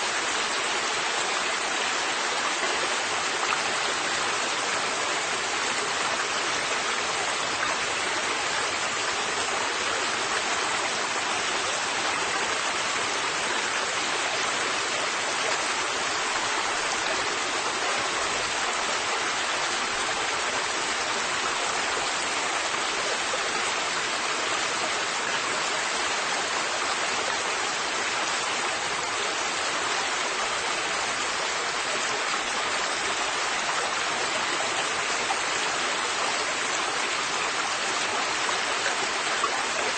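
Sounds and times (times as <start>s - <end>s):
river water flowing over rocks: 0.0s - 39.9s.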